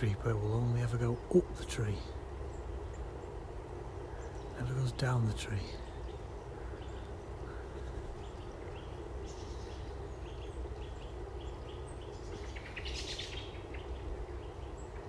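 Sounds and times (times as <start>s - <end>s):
low background rumble: 0.0s - 15.0s
small birds chirping: 0.0s - 15.0s.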